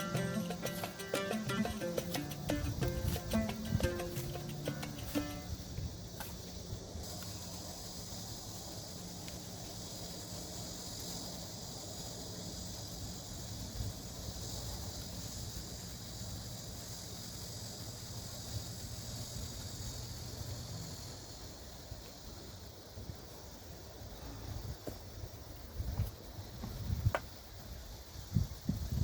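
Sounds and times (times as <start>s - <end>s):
insects chirping: 0.0s - 29.0s.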